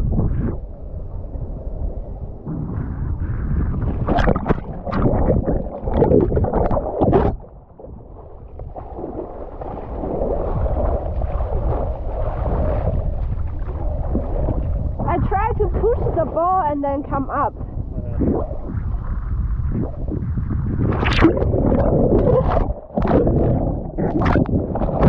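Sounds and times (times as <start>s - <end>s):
water splashing around kayak: 0.0s - 25.0s
rushing water: 3.8s - 19.2s, 20.8s - 25.0s.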